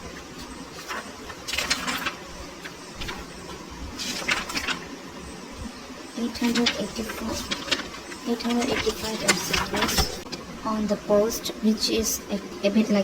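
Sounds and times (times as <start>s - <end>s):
rustling and clicking: 0.0s - 5.0s, 6.3s - 10.4s
low steady background noise: 0.0s - 13.0s.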